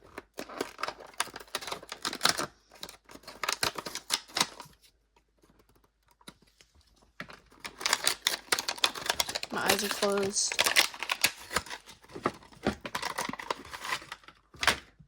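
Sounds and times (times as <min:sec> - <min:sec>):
plastic packaging crinkling: 0:07.2 - 0:14.6.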